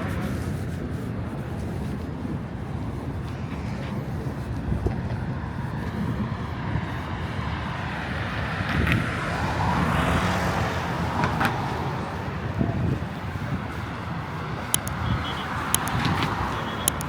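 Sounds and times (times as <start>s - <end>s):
rumble of passing cars: 0.0s - 17.0s
sharp clicks: 14.8s - 17.0s.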